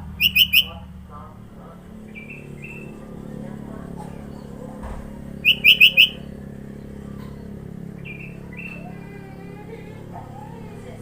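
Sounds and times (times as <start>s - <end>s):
bird chirps: 0.0s - 0.8s, 2.0s - 3.0s, 5.3s - 8.9s.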